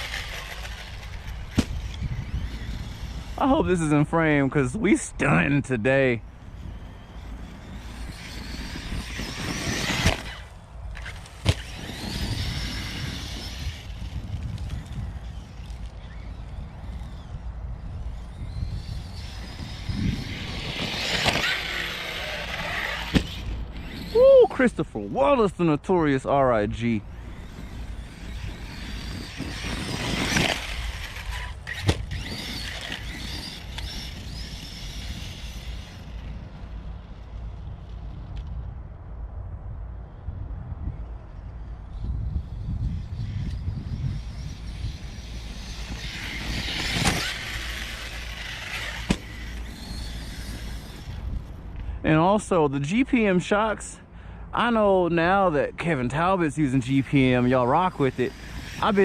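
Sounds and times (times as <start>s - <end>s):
toy truck motor whining: 0.0s - 3.6s, 6.3s - 24.6s, 27.2s - 36.3s, 42.0s - 51.6s, 57.0s - 59.0s.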